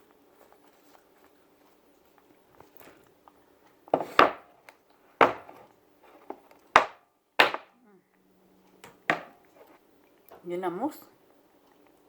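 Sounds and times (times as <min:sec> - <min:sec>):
utensil knocking on a dish: 0:05.2 - 0:05.5, 0:06.8 - 0:07.7.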